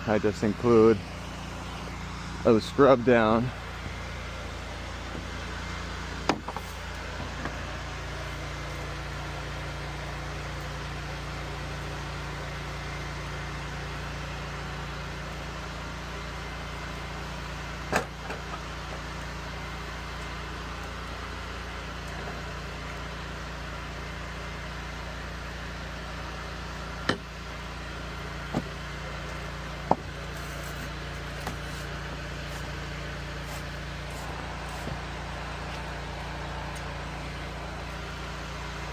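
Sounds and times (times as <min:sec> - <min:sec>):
pressure washer engine droning: 0:00.0 - 0:38.9.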